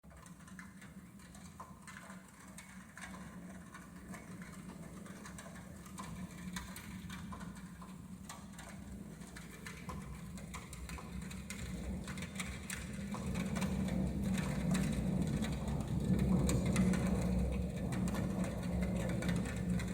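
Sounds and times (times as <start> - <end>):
light ticks and patter: 0.0 - 19.9.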